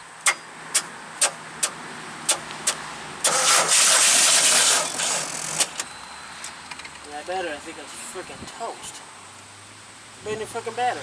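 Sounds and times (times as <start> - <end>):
engine running rough with pops: 0.0 - 5.9
loud rushing hiss: 2.3 - 5.8.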